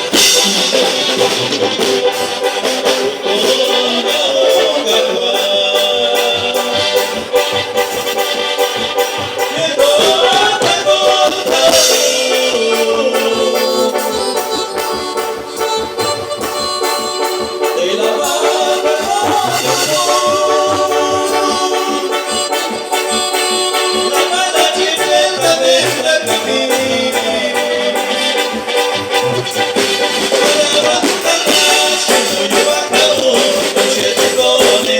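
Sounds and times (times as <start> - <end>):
band music: 0.0 - 34.9
steady percussion beat: 0.0 - 34.9.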